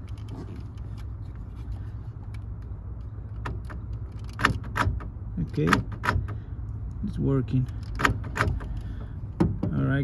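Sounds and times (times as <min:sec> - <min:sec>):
door lock actuator clacks: 0:03.4 - 0:06.4, 0:07.8 - 0:08.8.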